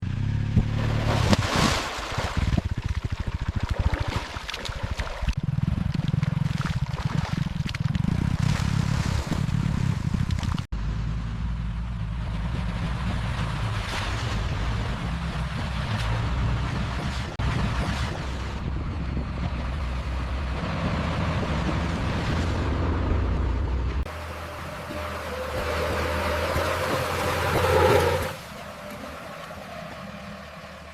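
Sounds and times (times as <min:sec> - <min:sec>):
gritty crackling noise: 0:02.1 - 0:24.2
heavy machinery engine rumble: 0:05.0 - 0:30.9.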